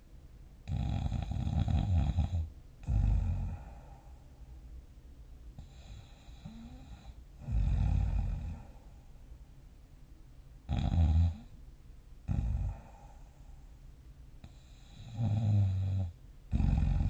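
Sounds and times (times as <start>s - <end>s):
person snoring: 0.7s - 4.0s, 5.6s - 8.8s, 10.7s - 11.5s, 12.3s - 13.3s, 14.4s - 17.0s.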